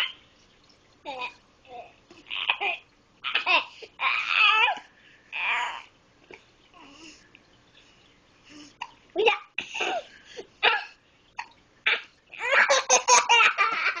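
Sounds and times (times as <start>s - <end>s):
young child laughing: 12.3s - 14.0s.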